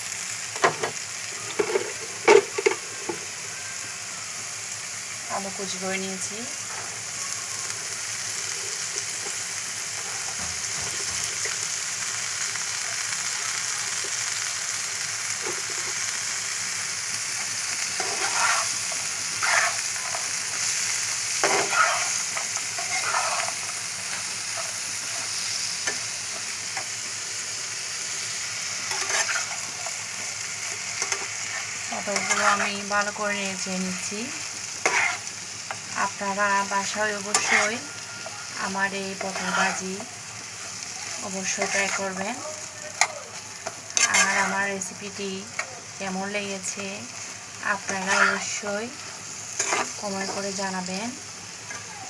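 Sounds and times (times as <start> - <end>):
vegetables sizzling in a pan: 0.0 - 52.0
spatula scraping a pan: 17.6 - 27.0, 28.1 - 33.2, 34.7 - 42.4, 43.0 - 44.8, 46.7 - 50.7.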